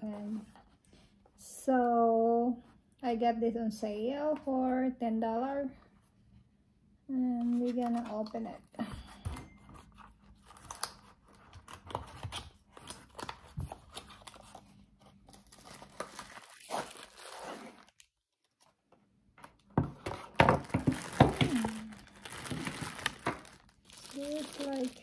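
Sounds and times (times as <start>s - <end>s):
packaging rustling and tearing: 9.8s - 18.8s, 19.5s - 25.0s.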